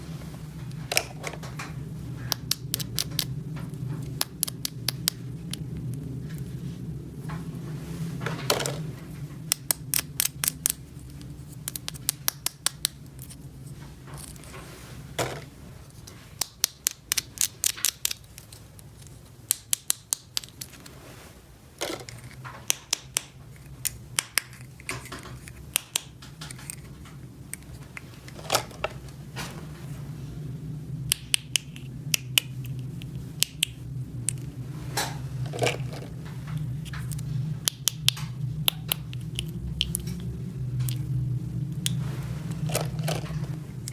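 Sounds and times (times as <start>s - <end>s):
steady low hum: 0.0s - 43.9s
plastic toy pieces clicking: 2.3s - 3.3s, 4.1s - 5.2s, 9.5s - 13.4s, 16.4s - 20.8s, 22.0s - 26.9s.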